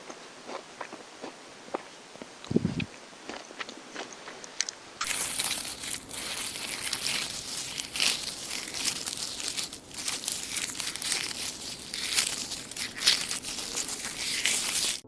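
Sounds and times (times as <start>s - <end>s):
dry leaves crunching: 5.0s - 15.0s.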